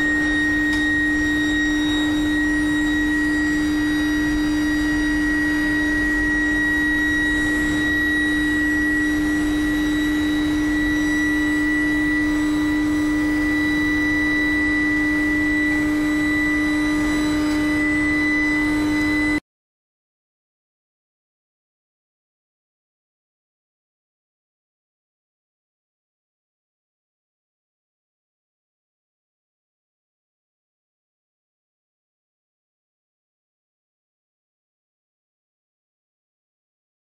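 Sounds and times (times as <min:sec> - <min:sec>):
electrical hum: 0:00.0 - 0:19.4
high steady whine: 0:00.0 - 0:19.4.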